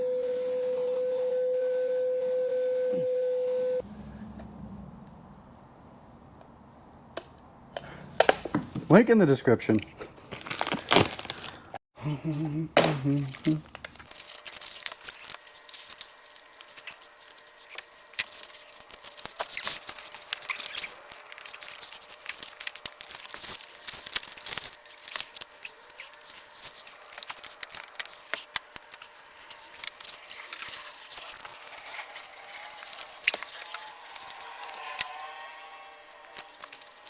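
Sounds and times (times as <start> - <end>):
sheet material crinkling and tearing: 10.2 - 11.7, 13.3 - 35.7.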